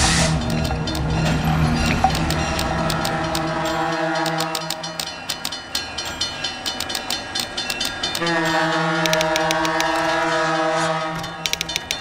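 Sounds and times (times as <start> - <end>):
train horn chord: 2.7 - 5.0, 8.2 - 11.5
typewriter key clacks: 9.1 - 10.2, 11.4 - 12.0.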